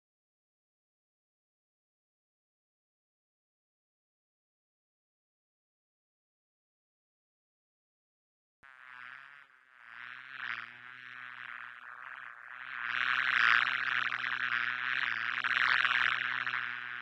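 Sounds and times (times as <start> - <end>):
honey bee buzzing: 8.6 - 17.0.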